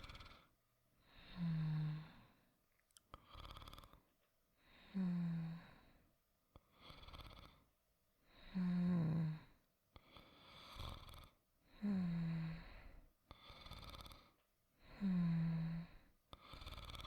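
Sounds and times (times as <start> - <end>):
person snoring: 0.0 - 0.5, 1.1 - 2.3, 8.5 - 9.5, 15.0 - 17.0.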